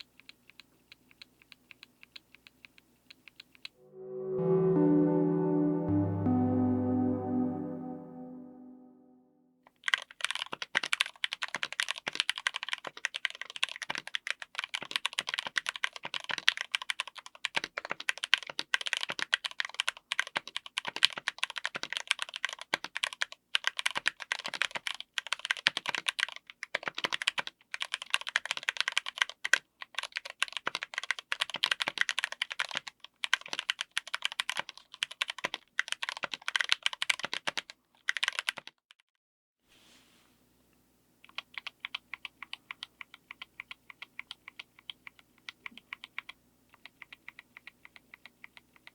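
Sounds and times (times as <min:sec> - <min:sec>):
mechanical keyboard typing: 0:09.9 - 0:38.8, 0:41.3 - 0:48.9.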